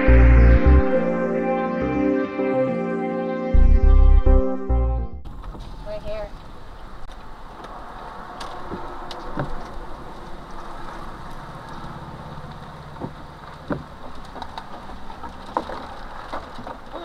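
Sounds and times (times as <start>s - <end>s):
low hum: 0.0s - 5.8s
wind-blown rain and debris hits: 5.3s - 17.0s.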